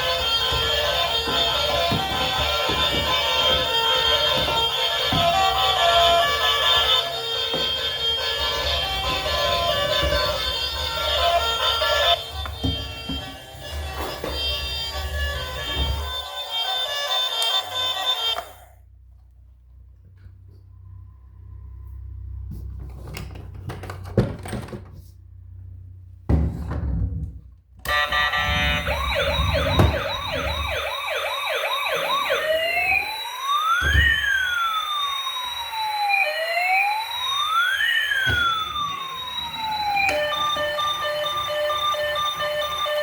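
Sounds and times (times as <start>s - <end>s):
handling knocks: 0.0s - 11.6s
toy electronic siren: 0.0s - 18.8s, 27.8s - 43.0s.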